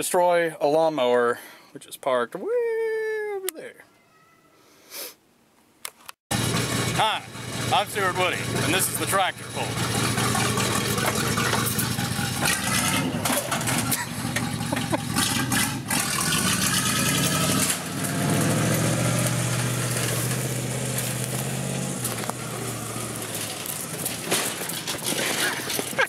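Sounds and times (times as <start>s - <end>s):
truck engine running with knocks: 6.3s - 26.0s.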